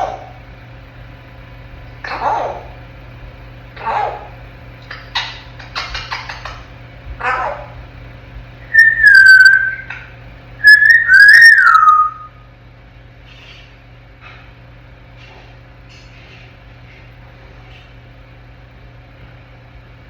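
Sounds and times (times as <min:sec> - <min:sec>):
parrot whistling: 0:08.6 - 0:10.0, 0:10.6 - 0:12.4.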